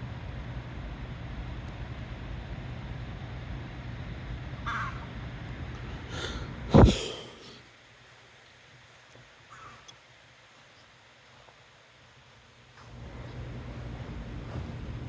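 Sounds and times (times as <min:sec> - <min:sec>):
bird cawing: 0:04.6 - 0:05.1, 0:09.5 - 0:10.0
wind rumbling on microphone: 0:06.7 - 0:07.1.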